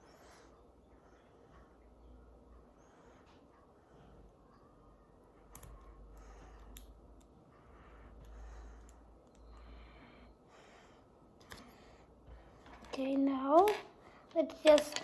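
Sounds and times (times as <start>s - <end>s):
plastic toy pieces clicking: 12.8s - 15.0s.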